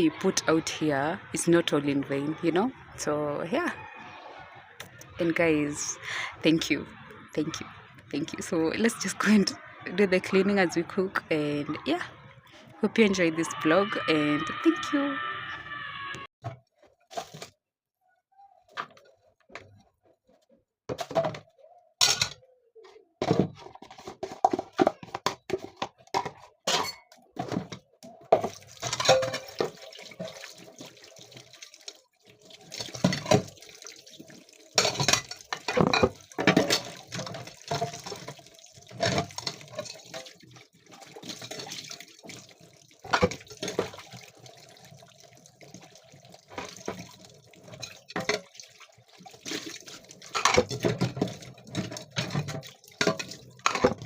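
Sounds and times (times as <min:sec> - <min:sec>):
dishes clinking: 0:22.0 - 0:22.4, 0:28.4 - 0:29.8, 0:34.8 - 0:38.4, 0:50.3 - 0:54.0
tap water running: 0:27.5 - 0:54.0.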